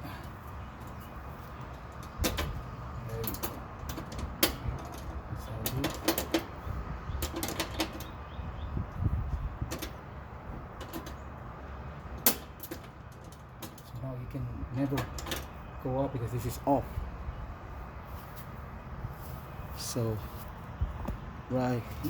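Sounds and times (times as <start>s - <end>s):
clicks of metal lock hardware: 1.6s - 8.2s, 9.7s - 10.0s, 10.8s - 11.2s, 12.2s - 14.0s, 14.7s - 15.6s.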